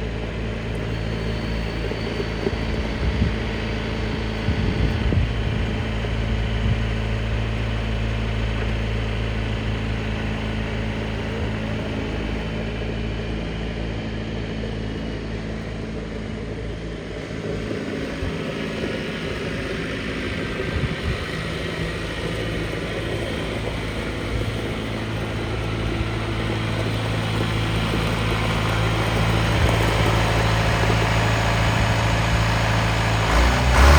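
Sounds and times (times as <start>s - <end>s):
diesel engine running: 0.0s - 33.9s.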